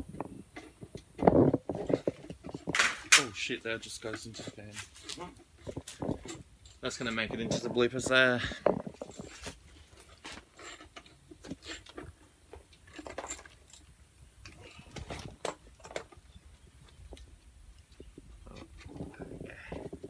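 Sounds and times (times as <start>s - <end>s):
metallic clinks of hand tools: 1.8s - 11.9s.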